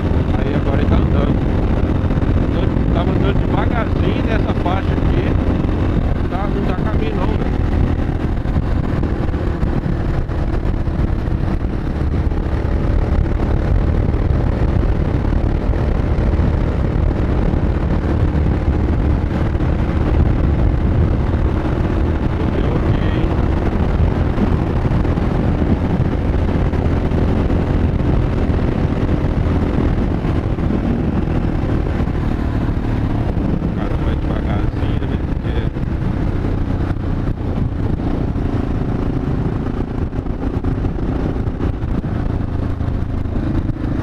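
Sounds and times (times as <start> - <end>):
motorcycle engine cruising: 0.0 - 44.0
wind noise on microphone: 0.0 - 44.0.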